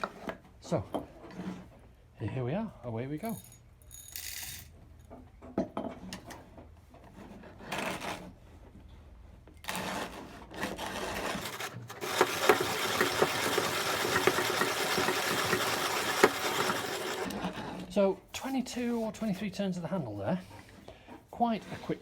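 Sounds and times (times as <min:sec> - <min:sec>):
manual coffee grinder grinding beans: 0:09.6 - 0:18.4.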